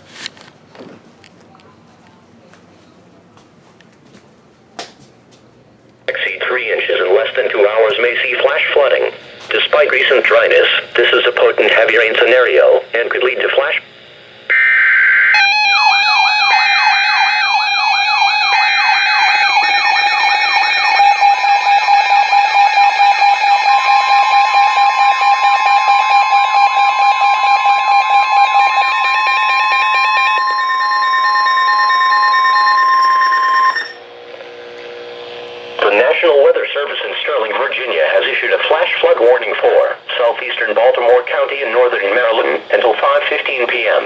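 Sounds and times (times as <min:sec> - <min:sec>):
alarm of falling sweeps: 0:14.5 - 0:34.0
steady warning alert tone: 0:15.1 - 0:34.0.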